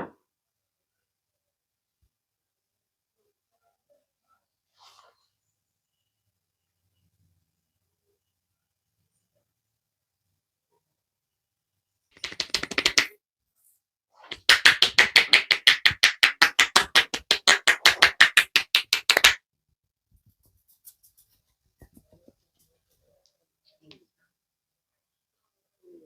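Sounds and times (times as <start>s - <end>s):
hands striking a head: 12.2s - 13.1s, 14.3s - 19.4s.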